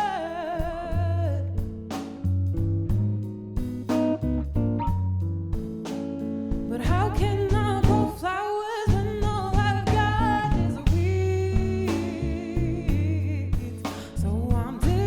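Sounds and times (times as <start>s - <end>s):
woman singing with vibrato: 0.0s - 1.6s, 6.7s - 15.0s
bass line: 0.0s - 15.0s
strummed guitar: 1.5s - 15.0s.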